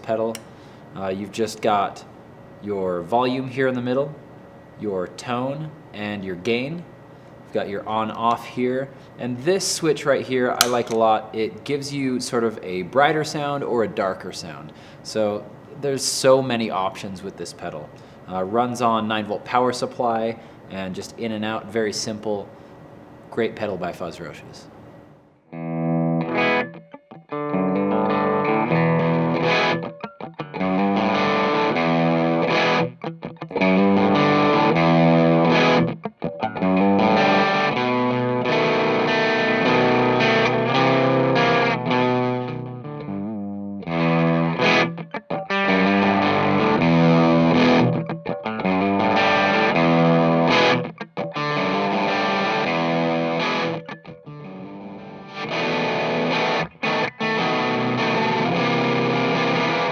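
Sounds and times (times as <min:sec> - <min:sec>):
distorted electric guitar riffs: 0:25.5 - 0:59.9.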